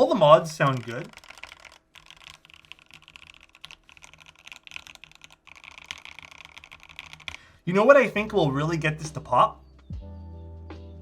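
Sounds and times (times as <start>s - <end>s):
quiet mechanical keyboard typing: 0.0s - 7.5s.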